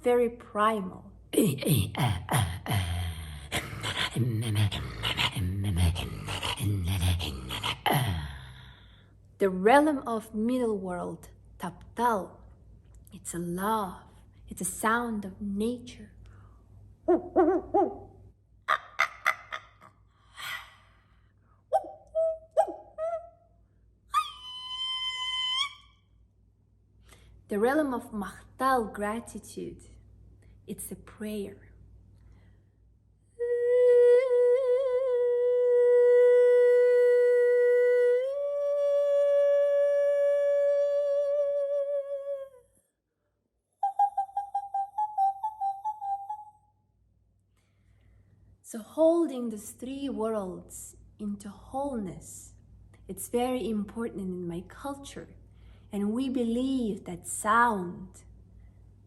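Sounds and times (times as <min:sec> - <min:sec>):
woman singing wordlessly: 0:33.4 - 0:42.7.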